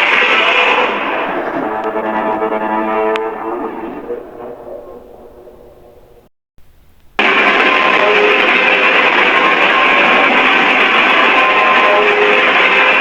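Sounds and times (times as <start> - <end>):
faint tones: 0.0 - 12.9
loud harsh distorted noise: 0.0 - 13.0.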